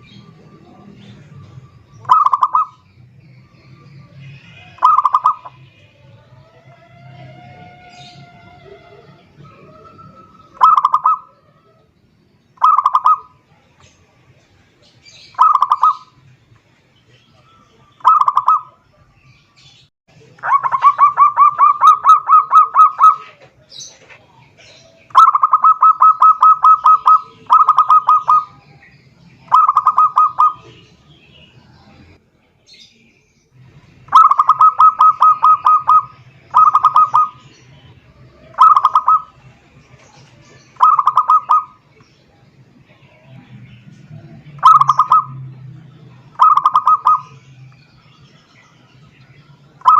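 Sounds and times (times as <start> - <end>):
dove cooing: 0.0 - 2.9, 4.4 - 11.9, 12.6 - 13.4, 15.1 - 16.2, 17.5 - 18.8, 20.4 - 24.3, 25.1 - 28.7, 29.4 - 30.9, 34.1 - 37.5, 38.3 - 41.8, 44.6 - 45.4, 46.3 - 47.4.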